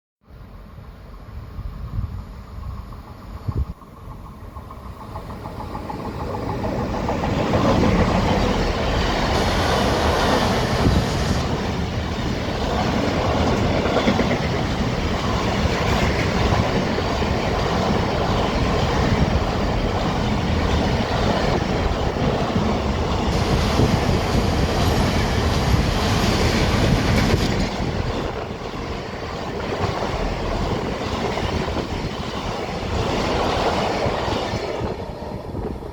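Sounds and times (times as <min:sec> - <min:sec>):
train wheels rumbling on track: 0:00.3 - 0:35.9.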